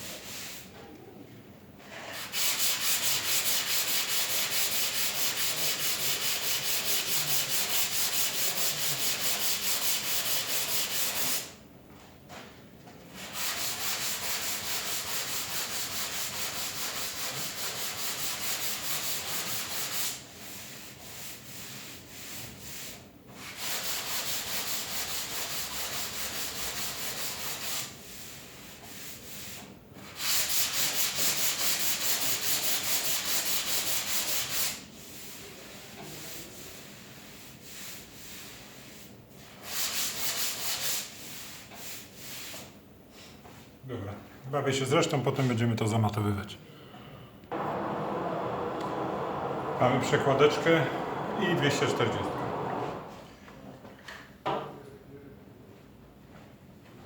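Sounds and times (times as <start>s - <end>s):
sandpaper sanding body filler: 1.9s - 11.5s, 13.2s - 42.6s, 47.5s - 53.1s.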